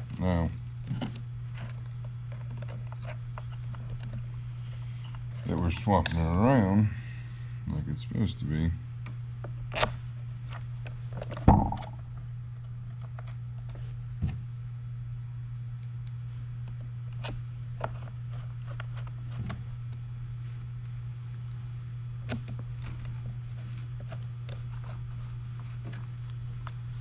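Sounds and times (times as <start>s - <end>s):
steady low hum: 0.0s - 27.0s
loud thump: 11.5s - 12.0s.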